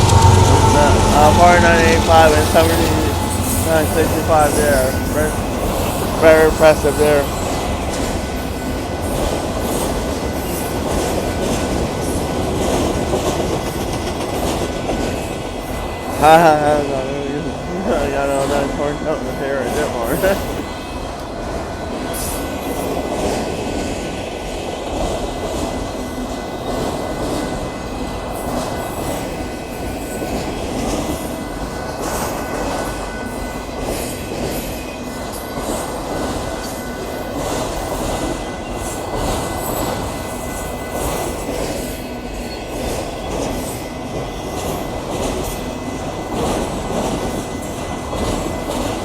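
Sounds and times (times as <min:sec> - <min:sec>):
high wheel squeal: 0:00.0 - 0:07.2
steel wheels rumbling on rail: 0:00.0 - 0:49.0.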